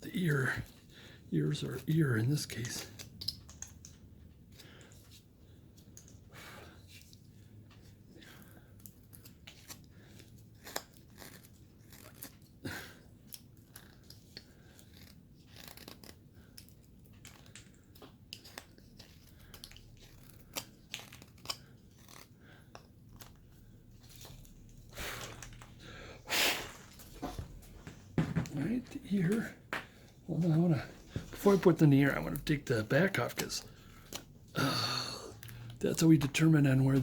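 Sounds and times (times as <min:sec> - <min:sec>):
carving tool shaving wood: 0:09.5 - 0:12.6, 0:14.2 - 0:16.9, 0:18.6 - 0:23.4.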